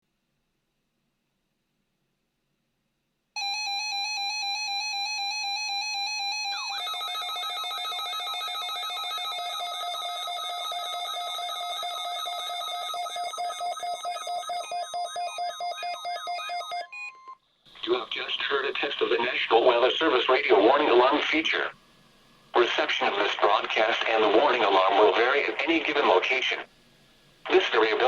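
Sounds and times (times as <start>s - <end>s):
pulsing chirping alarm: 3.4s - 17.4s
steady electronic alarm tone: 3.4s - 17.4s.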